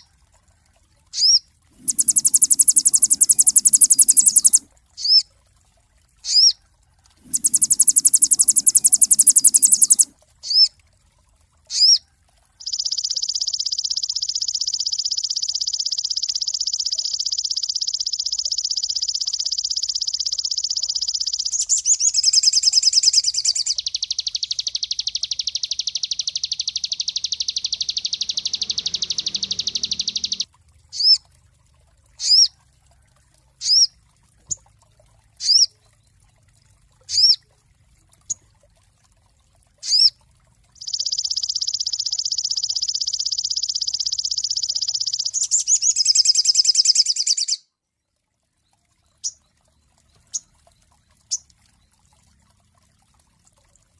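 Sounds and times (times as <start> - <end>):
rapid high buzzing bird trill: 1.2 - 5.2, 7.2 - 10.7, 12.6 - 31.2, 40.8 - 47.6.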